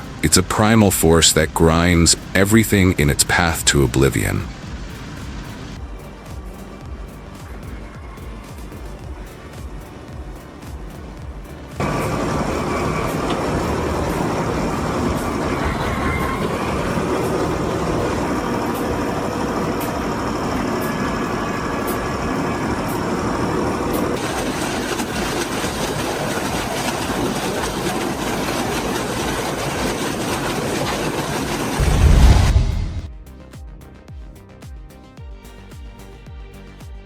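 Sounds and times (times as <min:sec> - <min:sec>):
heavy machinery drone: 0:00.0 - 0:33.1.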